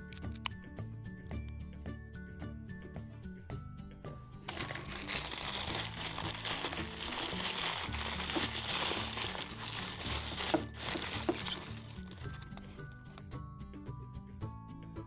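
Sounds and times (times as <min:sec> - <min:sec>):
background music: 0:00.0 - 0:15.0
plastic packaging crinkling: 0:04.5 - 0:12.7.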